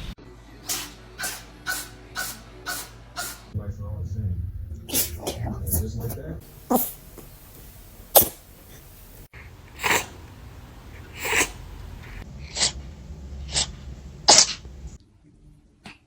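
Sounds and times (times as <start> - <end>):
cat sneezing: 0.7 - 3.5, 4.9 - 10.3, 10.9 - 12.8, 14.3 - 14.6.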